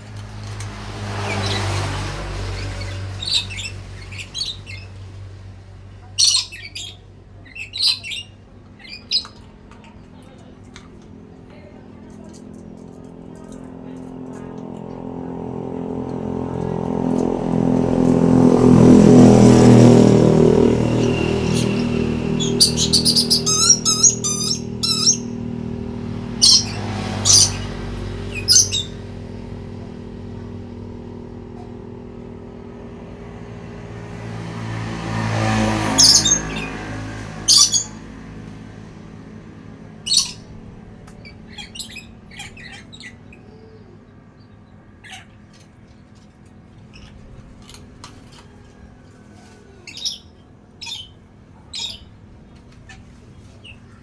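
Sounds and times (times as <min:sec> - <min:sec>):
vehicle passing: 0:00.0 - 0:54.0
bird warbling trill: 0:01.2 - 0:05.0, 0:06.1 - 0:09.5, 0:19.2 - 0:25.5, 0:26.3 - 0:29.2, 0:35.8 - 0:38.0, 0:40.0 - 0:40.6, 0:41.2 - 0:43.9, 0:49.8 - 0:52.2
soft bird chirps: 0:02.4 - 0:05.1, 0:06.0 - 0:10.5, 0:20.8 - 0:25.4, 0:26.4 - 0:29.1, 0:48.5 - 0:54.0
short high-pitched bird calls: 0:06.2 - 0:09.4, 0:21.0 - 0:25.4, 0:26.4 - 0:29.0.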